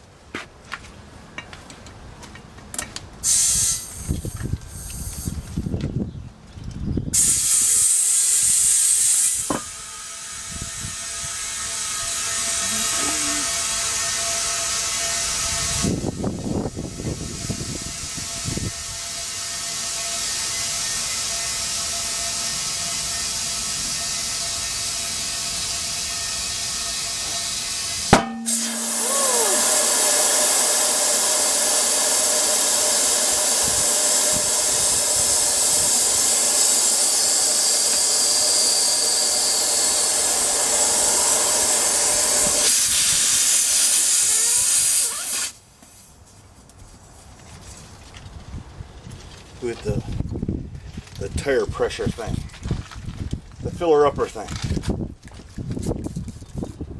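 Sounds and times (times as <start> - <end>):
compressed air hissing: 3.2 - 5.8, 7.1 - 45.6.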